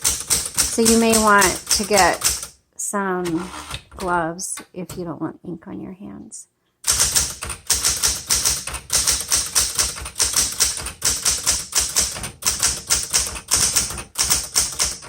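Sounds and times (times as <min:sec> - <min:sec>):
manual typewriter keystrokes: 0:00.0 - 0:02.5, 0:06.8 - 0:15.0.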